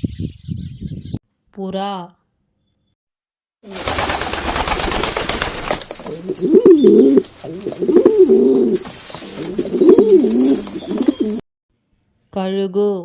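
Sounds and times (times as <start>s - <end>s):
pigeon cooing: 6.1s - 11.4s.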